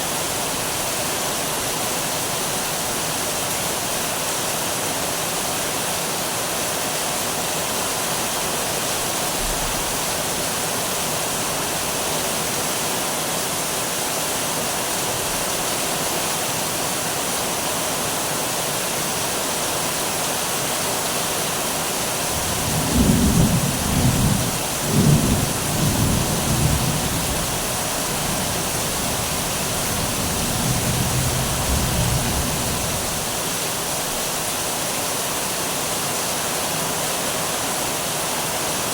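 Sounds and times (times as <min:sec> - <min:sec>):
steady rain falling: 0:00.0 - 0:38.9
thunder rumbling: 0:22.4 - 0:33.3.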